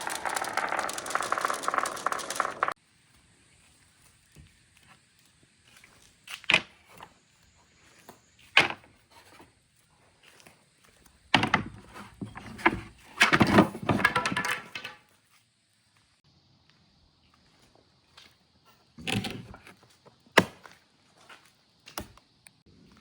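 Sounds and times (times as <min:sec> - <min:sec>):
marbles rolling and clattering: 0:00.0 - 0:02.8, 0:13.3 - 0:15.0
sharp marble click: 0:00.0 - 0:02.8.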